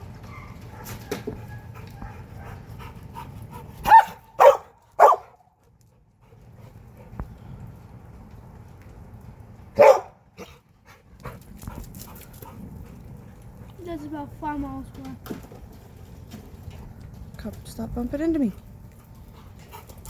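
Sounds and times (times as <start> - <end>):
dog barking: 3.8 - 5.4, 9.8 - 10.2.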